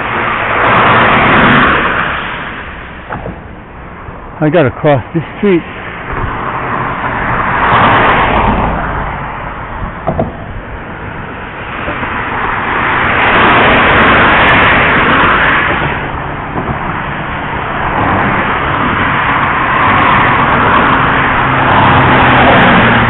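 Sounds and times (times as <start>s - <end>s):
car passing by: 0.0s - 23.0s
brief knock: 10.0s - 10.4s.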